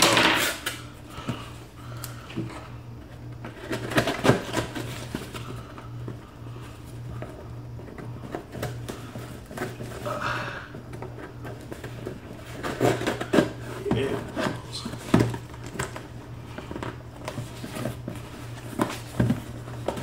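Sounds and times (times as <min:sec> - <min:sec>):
steady low hum: 0:00.0 - 0:20.0
hands opening cardboard box: 0:03.5 - 0:05.4.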